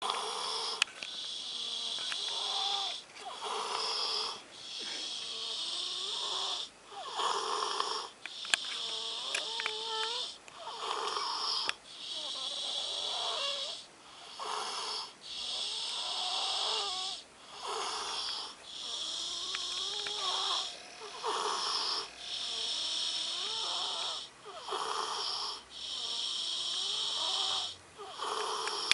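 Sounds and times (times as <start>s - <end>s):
loud nasal snoring: 0.0s - 28.9s
whistling snore notes: 14.8s - 28.9s.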